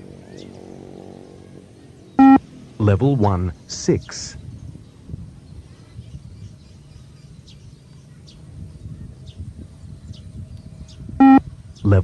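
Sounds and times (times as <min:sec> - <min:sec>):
faint high chirps: 0:02.2 - 0:02.4, 0:11.2 - 0:11.4.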